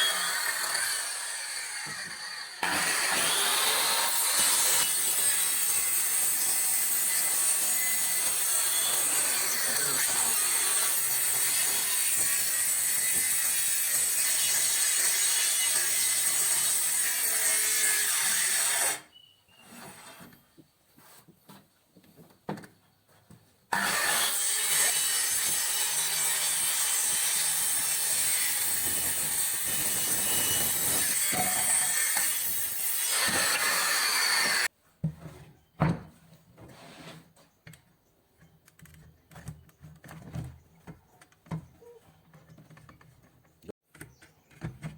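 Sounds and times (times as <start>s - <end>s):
power saw cutting wood: 0.0s - 19.1s, 23.7s - 34.7s.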